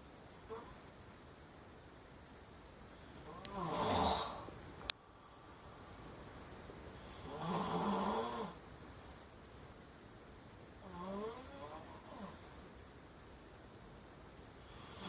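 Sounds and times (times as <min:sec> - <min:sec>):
man snoring: 0:03.2 - 0:04.5, 0:07.1 - 0:08.6, 0:10.8 - 0:12.4, 0:14.7 - 0:15.0.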